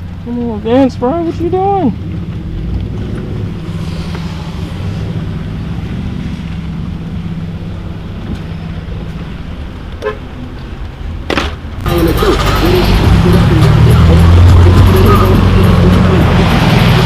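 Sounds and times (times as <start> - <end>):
car engine running: 0.0 - 17.0.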